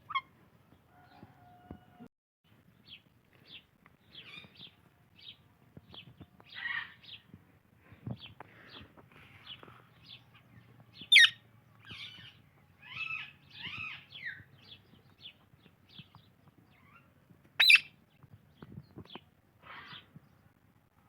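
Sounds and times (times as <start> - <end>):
parakeet squawks: 0.1 - 0.3, 11.1 - 11.4, 17.6 - 17.9
parakeets chirping: 11.0 - 14.4, 17.6 - 17.9
loud parakeet screeches: 17.6 - 17.8.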